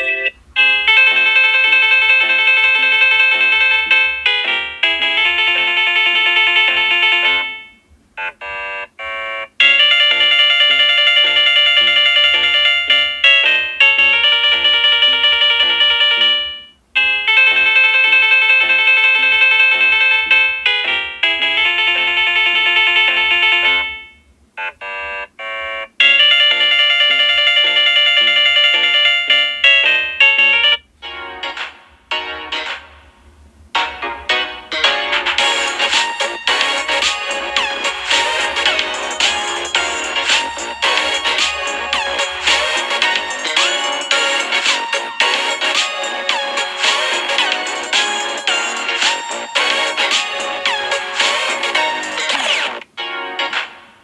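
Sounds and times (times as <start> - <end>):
melodic phone ringtone: 0.0 - 32.8, 33.8 - 53.5.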